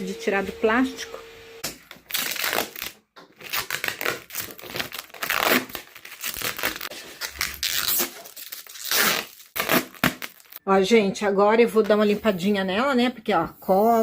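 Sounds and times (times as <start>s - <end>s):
plastic film ripping and crinkling: 1.9s - 10.6s.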